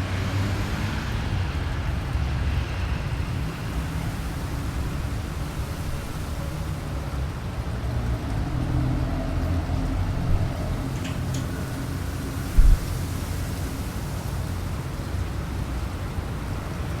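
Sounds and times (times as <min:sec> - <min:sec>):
gusty wind rushing: 0:08.4 - 0:17.0.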